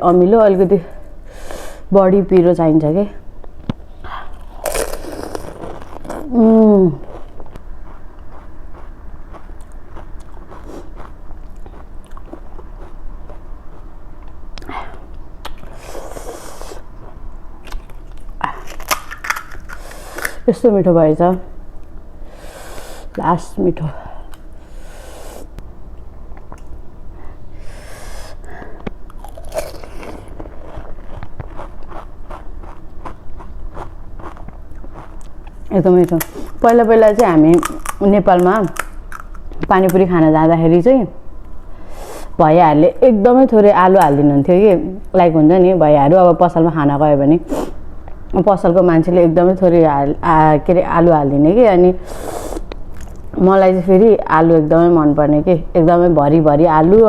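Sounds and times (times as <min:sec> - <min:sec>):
chewing crisp shells: 0:07.0 - 0:14.7, 0:17.0 - 0:20.4, 0:29.1 - 0:39.6
crisp shells crunching: 0:17.6 - 0:20.4, 0:29.2 - 0:33.2, 0:36.0 - 0:39.4.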